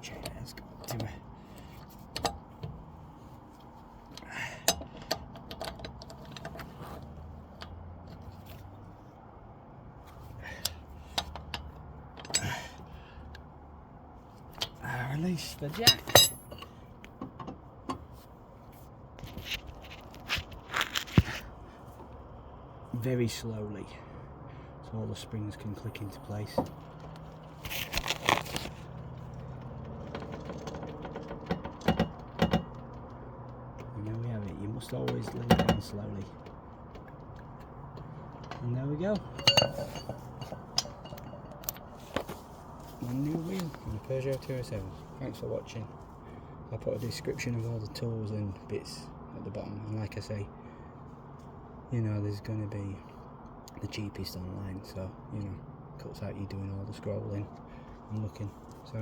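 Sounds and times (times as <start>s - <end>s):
hand tools clinking: 10.6s - 12.8s, 15.7s - 16.8s, 38.5s - 42.4s
car jack scraping and rattling: 15.4s - 16.8s, 26.7s - 33.7s, 38.3s - 44.0s.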